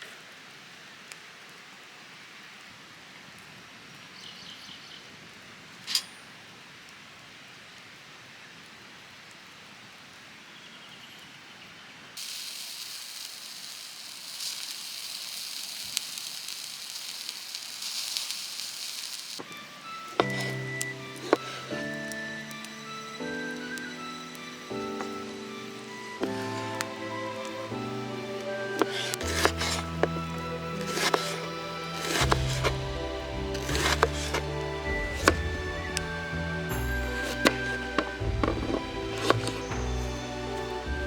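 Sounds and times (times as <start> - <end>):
quiet outdoor hiss: 0.0 - 41.0
food sizzling on a hot pan: 12.2 - 41.0.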